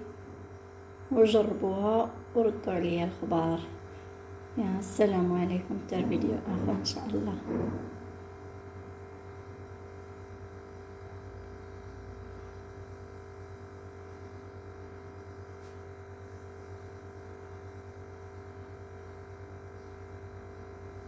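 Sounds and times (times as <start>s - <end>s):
mid-pitched hum: 0.0s - 17.6s.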